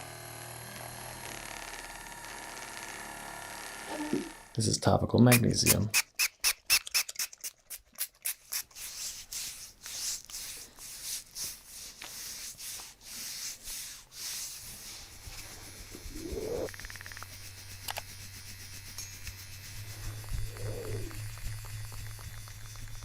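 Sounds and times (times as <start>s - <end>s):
hands rubbing skin: 5.3s - 23.0s.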